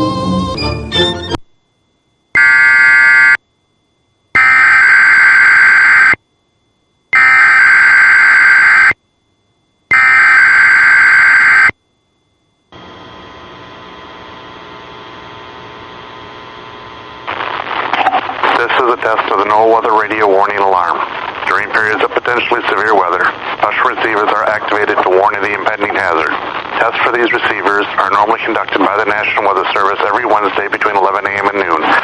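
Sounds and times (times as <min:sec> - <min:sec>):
loud buzzy data bursts: 0:02.4 - 0:03.4, 0:04.4 - 0:06.2
steady weather-radio alert tone: 0:02.4 - 0:03.4, 0:04.4 - 0:06.2, 0:07.2 - 0:09.0, 0:09.9 - 0:11.7, 0:17.3 - 0:32.0.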